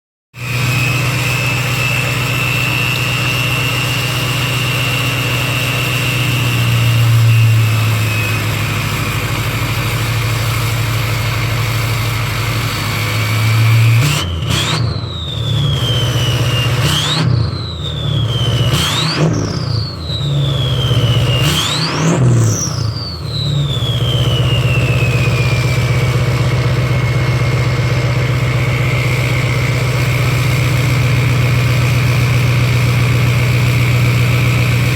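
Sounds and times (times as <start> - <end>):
diesel engine idling: 0.4 - 14.4, 22.9 - 34.9
engine throttle blips: 0.4 - 34.9
high turbo whine: 0.4 - 34.9.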